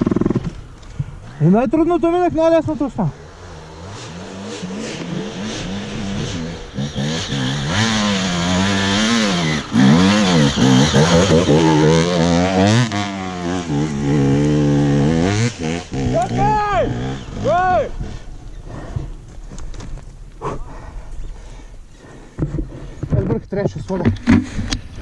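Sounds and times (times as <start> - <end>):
vehicle engine revving: 2.8 - 19.2.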